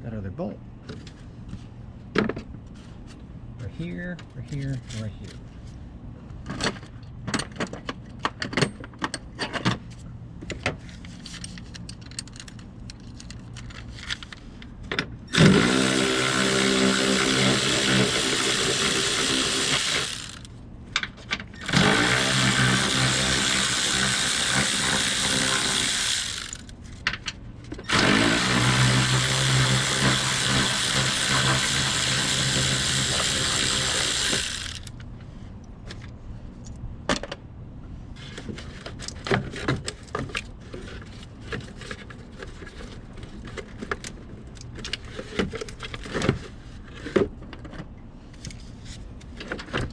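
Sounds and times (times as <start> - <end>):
power tool motor running: 15.3 - 20.5, 21.6 - 26.7, 27.9 - 34.9.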